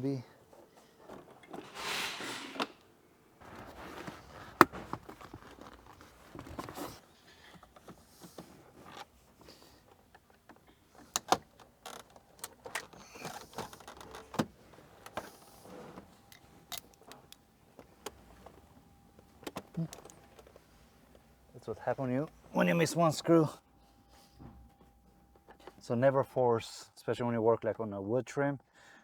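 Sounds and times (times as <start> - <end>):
rustling: 3.4 - 11.1.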